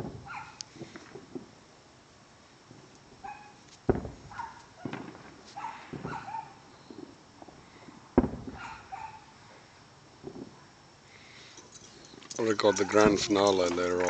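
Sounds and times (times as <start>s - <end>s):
distant firework bangs: 0.0s - 1.6s, 2.6s - 10.8s, 12.6s - 14.0s
firework pops and cracks: 0.0s - 1.6s, 2.6s - 9.2s, 10.2s - 10.7s, 12.2s - 14.0s.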